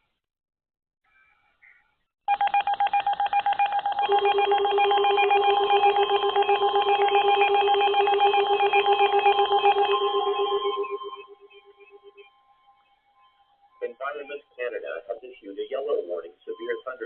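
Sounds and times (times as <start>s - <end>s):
electronic alert warble: 3.9s - 13.4s
low pulsing tone: 5.3s - 14.0s.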